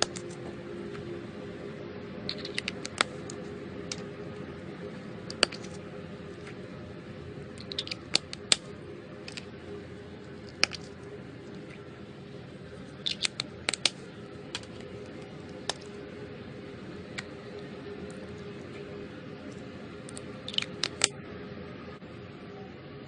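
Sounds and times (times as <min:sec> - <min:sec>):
steady background hiss: 0:00.0 - 0:23.0
slime clicking and popping: 0:02.3 - 0:03.1, 0:05.3 - 0:05.7, 0:07.6 - 0:08.6, 0:13.0 - 0:14.0, 0:20.1 - 0:21.1.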